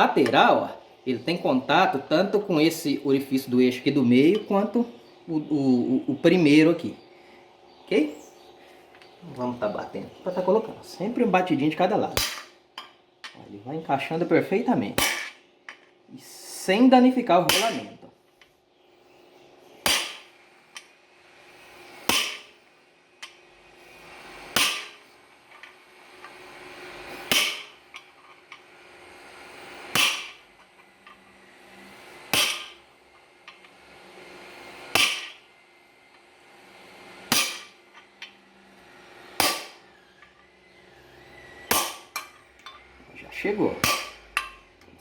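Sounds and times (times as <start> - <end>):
hammer striking metal: 12.2 - 13.4, 15.0 - 15.8, 17.5 - 18.0, 19.8 - 20.9, 22.1 - 22.6, 24.5 - 25.0, 27.3 - 28.1, 29.9 - 30.4, 32.3 - 32.9, 34.9 - 35.4, 37.3 - 38.4, 39.4 - 39.8, 41.7 - 42.9, 43.8 - 44.9.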